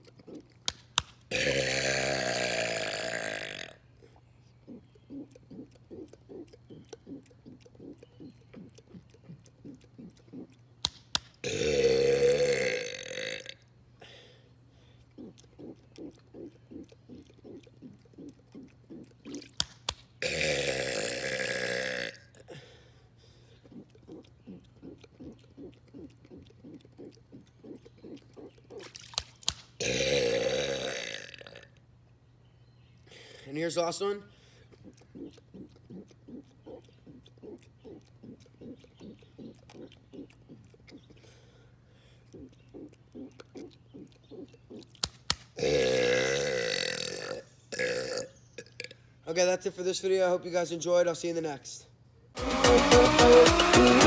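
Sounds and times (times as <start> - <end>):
sharp clicks: 0.6 - 1.3, 10.8 - 11.4, 19.5 - 20.1, 29.1 - 29.7, 44.8 - 45.6
man burping: 1.3 - 3.8, 11.4 - 13.6, 20.2 - 22.8, 29.8 - 31.8, 45.6 - 49.0
quiet rhythmic sounds: 3.8 - 11.8, 13.6 - 20.3, 22.4 - 29.8, 31.8 - 45.7.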